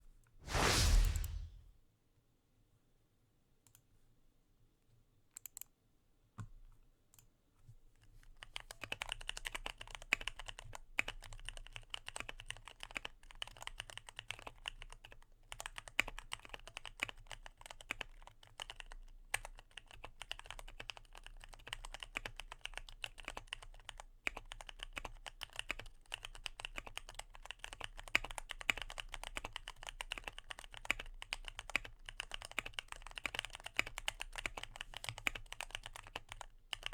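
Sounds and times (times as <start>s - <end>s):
mechanical keyboard typing: 8.8s - 11.6s, 12.5s - 36.9s.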